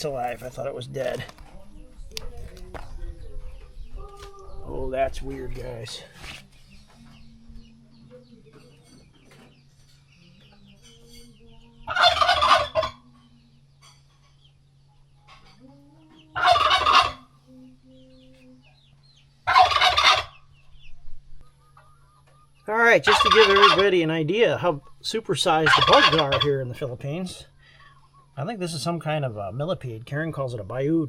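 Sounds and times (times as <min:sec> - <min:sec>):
faint low hum: 0:00.0 - 0:31.0
turkey gobbling: 0:11.9 - 0:13.0, 0:16.3 - 0:17.3, 0:19.4 - 0:20.5, 0:21.5 - 0:24.6, 0:25.4 - 0:28.3.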